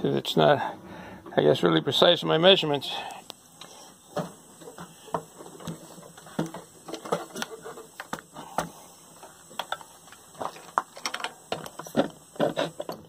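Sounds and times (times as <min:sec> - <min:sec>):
metal tools clicking and knocking: 0:09.6 - 0:12.1.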